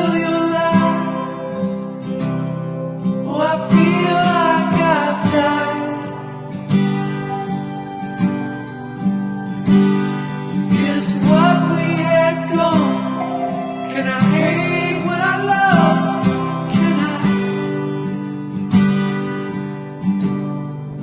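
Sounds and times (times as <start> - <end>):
acoustic guitar strumming: 0.0 - 21.0
person singing: 10.7 - 17.9.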